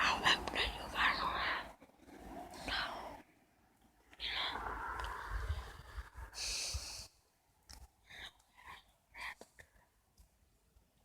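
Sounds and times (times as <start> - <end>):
person whispering: 0.0 - 1.8, 2.6 - 3.3, 4.1 - 7.1, 8.1 - 9.6.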